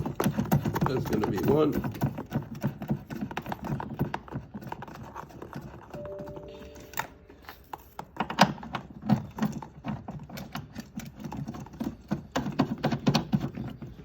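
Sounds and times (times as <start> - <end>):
short steady tone: 6.0 - 7.6.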